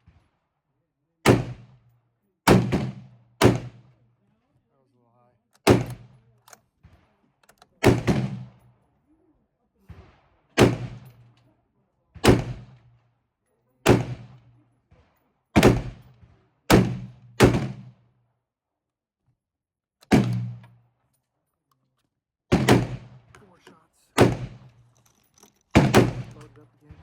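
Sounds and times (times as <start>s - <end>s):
rifle shots: 1.2s - 1.8s, 2.5s - 3.9s, 5.6s - 6.2s, 6.8s - 8.7s, 9.9s - 11.3s, 12.2s - 12.9s, 13.8s - 15.0s, 15.6s - 18.0s, 20.0s - 20.7s, 22.5s - 23.5s, 24.2s - 27.0s.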